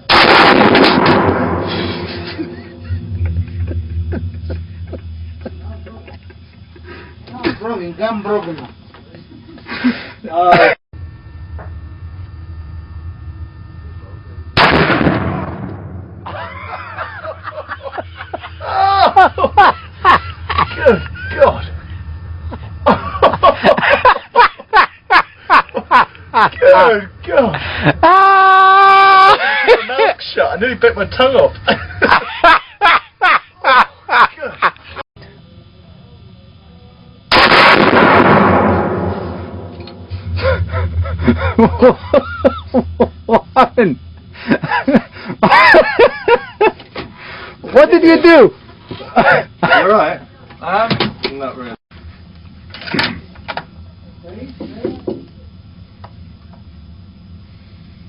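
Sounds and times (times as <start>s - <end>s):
loud gunshot: 0.0s - 2.3s, 14.6s - 16.2s, 37.3s - 40.0s
excited voices: 16.3s - 21.8s, 25.6s - 32.8s.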